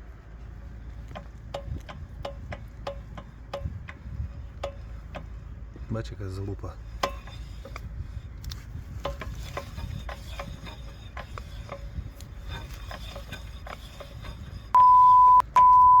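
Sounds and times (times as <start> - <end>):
low steady rumble: 0.0 - 16.0
censor beep tone: 14.8 - 16.0.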